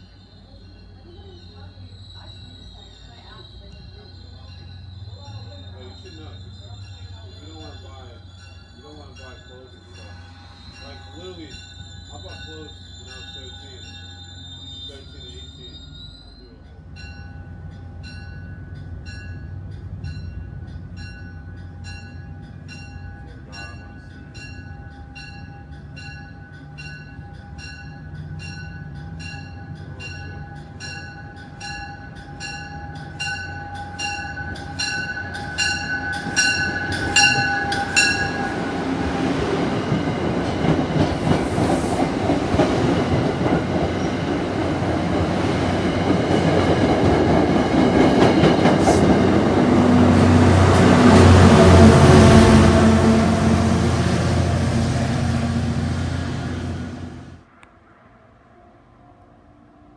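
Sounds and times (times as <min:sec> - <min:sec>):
train wheels on rails: 0:00.0 - 0:57.5
warning bell striking: 0:28.4 - 0:38.9.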